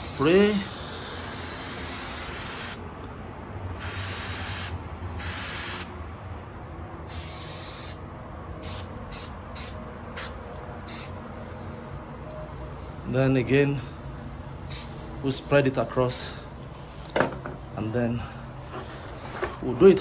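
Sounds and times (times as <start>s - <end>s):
spray adhesive hissing bursts: 0.0s - 2.8s, 3.8s - 5.9s, 7.1s - 8.0s, 8.6s - 11.1s, 14.7s - 14.9s.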